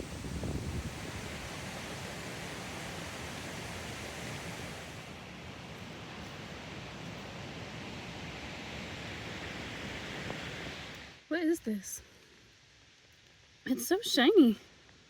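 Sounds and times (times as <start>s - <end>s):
stream and waterfall rushing: 0.0s - 11.3s.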